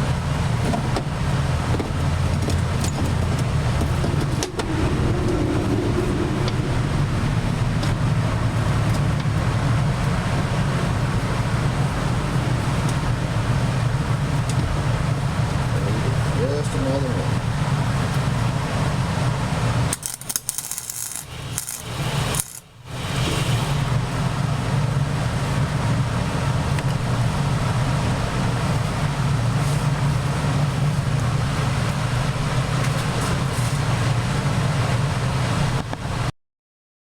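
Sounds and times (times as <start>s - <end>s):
welding arc crackling and buzzing: 19.9s - 23.1s.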